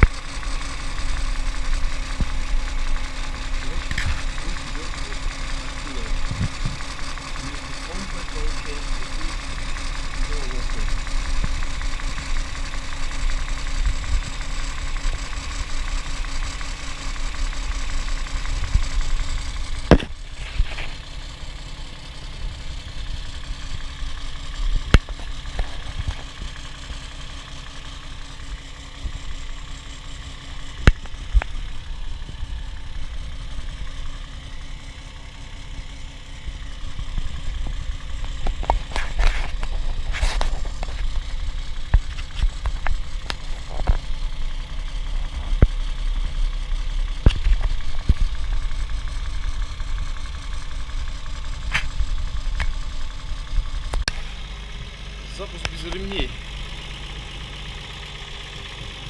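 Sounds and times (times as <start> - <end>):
car engine idling: 0.0 - 59.0
engine knock: 0.0 - 59.0.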